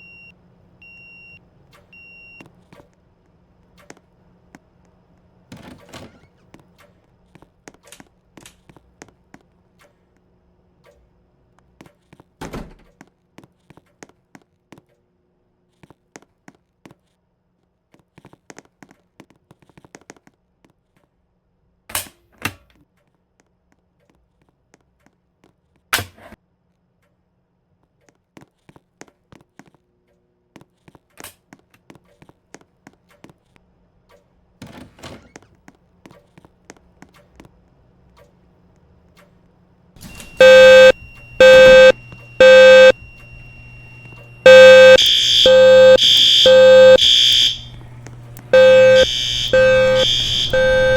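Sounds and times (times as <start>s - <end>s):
faint low hum: 39.7s - 50.9s.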